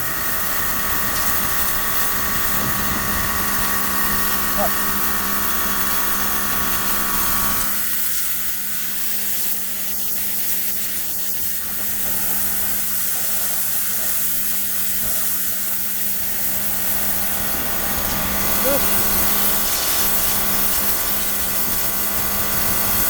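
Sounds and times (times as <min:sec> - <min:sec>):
pressure washer motor hum: 0:00.0 - 0:09.8, 0:10.6 - 0:23.0
high-pressure water spray hiss: 0:00.0 - 0:23.0.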